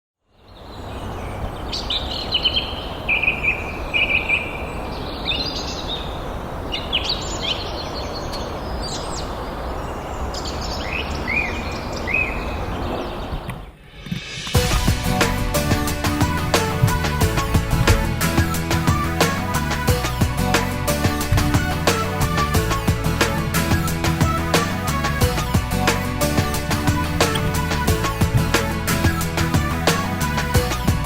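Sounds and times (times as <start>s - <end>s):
birds chirping and trilling: 0.2s - 31.0s
steady rushing noise: 11.1s - 30.3s
music: 13.9s - 31.0s.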